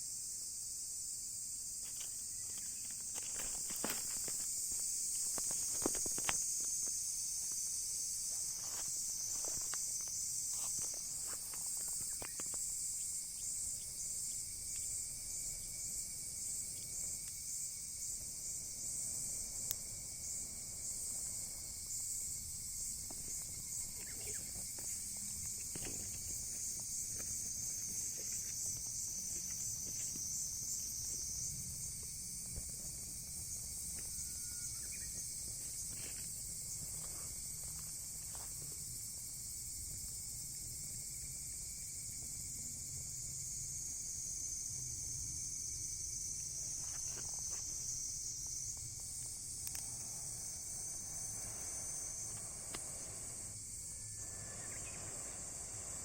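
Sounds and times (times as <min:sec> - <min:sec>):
insects chirping: 0:00.0 - 0:56.0
wood fire crackling: 0:01.9 - 0:06.8.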